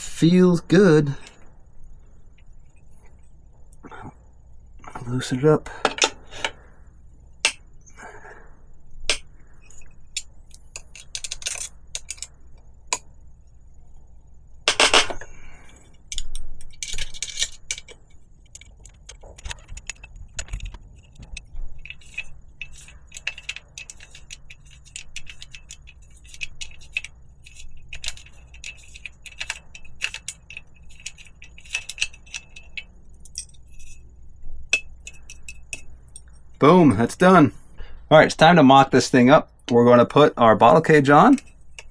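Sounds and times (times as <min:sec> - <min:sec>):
light metallic clicks and clinks: 0:14.7 - 0:36.6, 0:40.7 - 0:41.9
metal tool scraping: 0:19.4 - 0:34.1, 0:34.7 - 0:37.0, 0:40.5 - 0:41.9.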